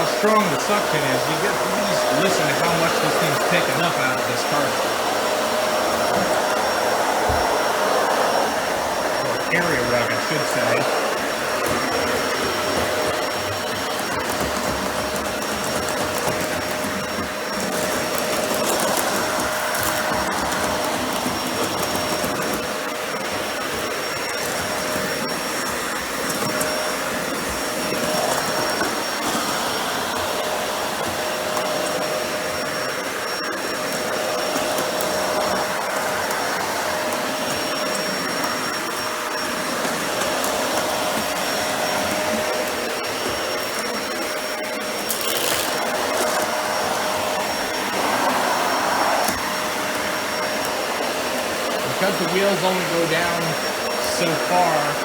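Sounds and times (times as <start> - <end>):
debris ticks in vacuum: 0.0 - 7.7, 8.4 - 55.0
vacuum cleaner running on rug: 0.0 - 55.0.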